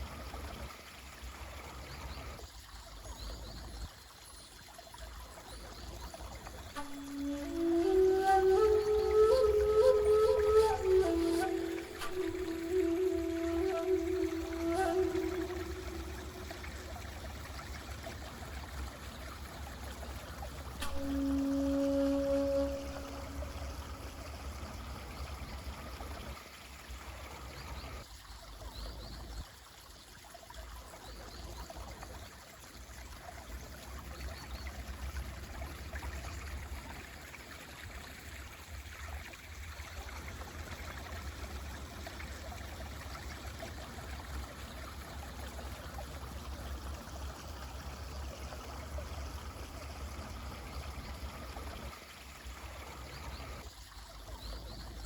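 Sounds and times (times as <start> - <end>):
mountain stream flowing: 0.0 - 55.0
shakuhachi note: 6.8 - 17.1, 20.8 - 24.7.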